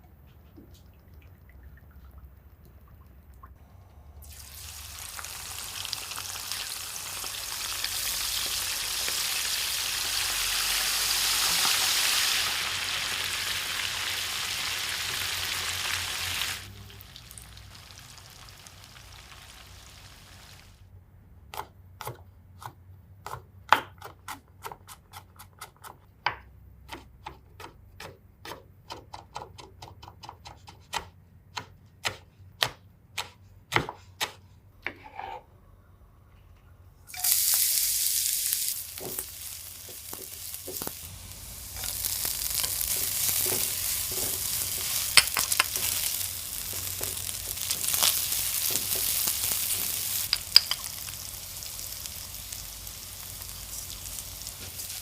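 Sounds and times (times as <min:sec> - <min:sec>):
loud steady hiss: 0:37.1 - 0:55.0.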